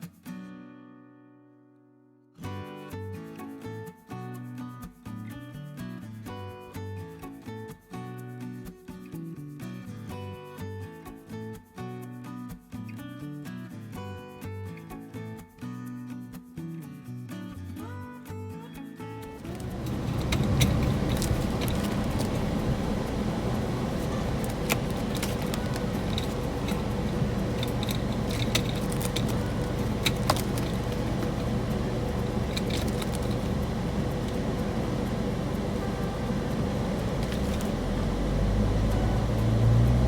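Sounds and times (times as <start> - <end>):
small clicks and rattles: 19.3 - 40.0
car interior rumble: 19.4 - 40.0.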